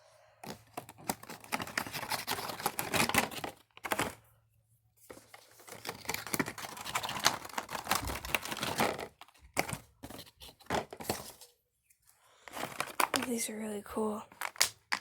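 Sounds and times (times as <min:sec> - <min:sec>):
cardboard packaging crinkling: 0:00.4 - 0:04.2, 0:05.1 - 0:11.5, 0:12.5 - 0:13.5.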